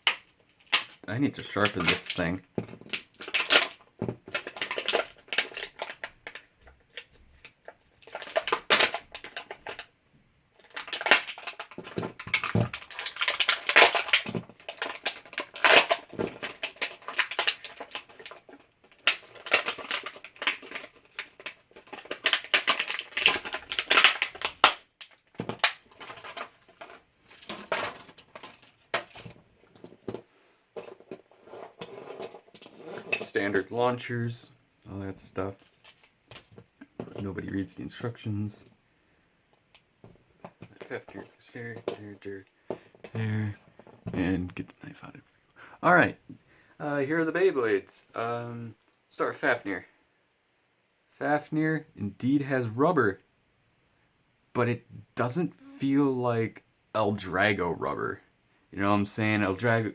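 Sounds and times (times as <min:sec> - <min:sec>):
plastic packaging crinkling: 0:00.0 - 0:09.9, 0:10.6 - 0:33.7.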